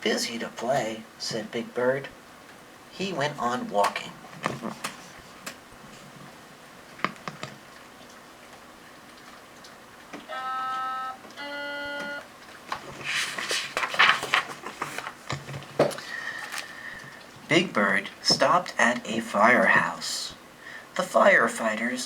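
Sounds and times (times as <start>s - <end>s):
electronic tones: 10.3s - 12.3s
paper page rustling: 12.7s - 16.8s.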